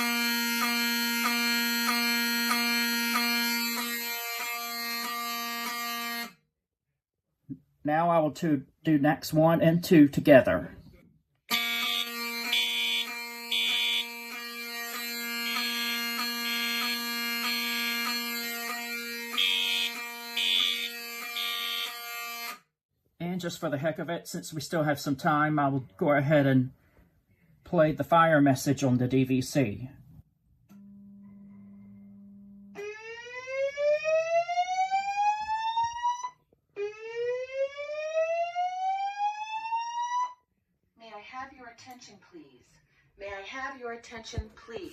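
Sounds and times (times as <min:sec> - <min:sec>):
fire alarm horn steady buzzing: 0:00.0 - 0:06.5, 0:11.5 - 0:22.7, 0:30.7 - 0:40.5
high-pitched fire alarm horn blasts: 0:00.0 - 0:06.5, 0:11.5 - 0:22.7
rising whoop alarm tone: 0:32.8 - 0:40.4.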